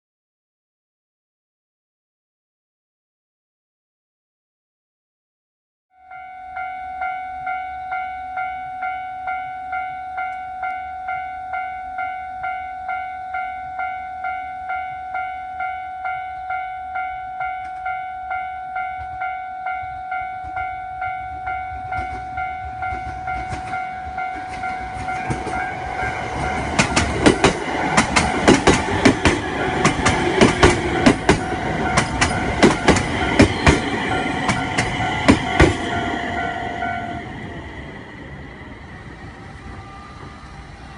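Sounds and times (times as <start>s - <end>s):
level-crossing alarm ding: 6.0s - 27.8s, 29.6s - 37.8s
train wheels clacking over rail joints: 26.2s - 36.5s.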